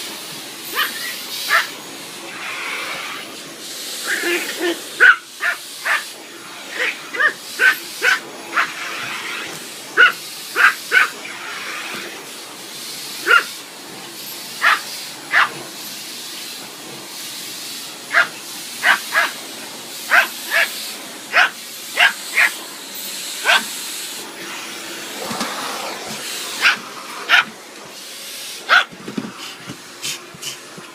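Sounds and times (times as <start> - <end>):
vacuum cleaner hiss: 0.0 - 30.9
small dog yapping: 0.7 - 1.7, 4.1 - 6.0, 6.7 - 11.2, 13.2 - 13.5, 14.6 - 15.5, 18.1 - 19.4, 20.1 - 20.7, 21.3 - 22.6, 23.4 - 23.7, 26.6 - 27.5, 28.6 - 28.9.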